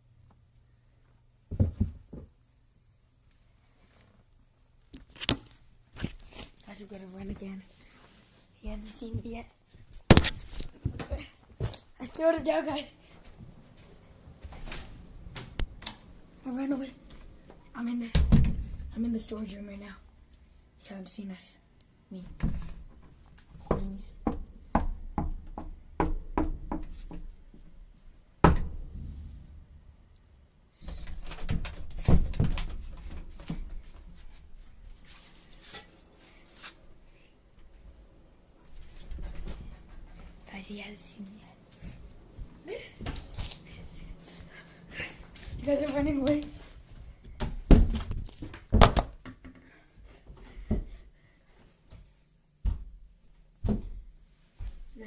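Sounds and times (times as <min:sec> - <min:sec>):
sharp knocks and thumps: 0:23.6 - 0:27.3.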